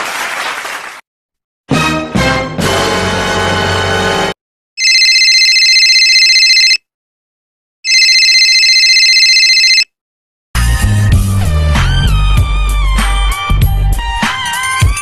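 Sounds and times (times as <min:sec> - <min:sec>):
music clip: 0:01.7 - 0:04.4
telephone ringing: 0:04.8 - 0:06.8, 0:07.8 - 0:09.9.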